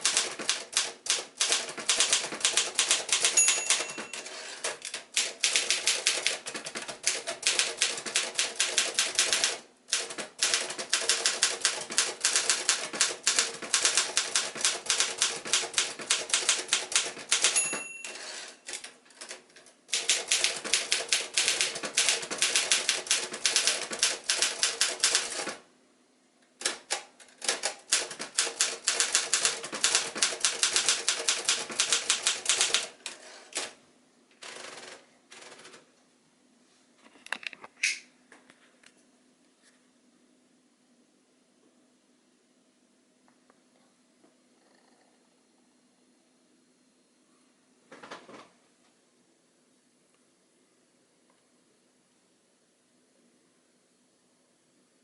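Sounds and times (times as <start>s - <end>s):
typewriter key clacks: 0.0s - 19.4s, 26.6s - 32.9s
typewriter margin bell ringing: 2.4s - 4.6s, 17.3s - 18.6s.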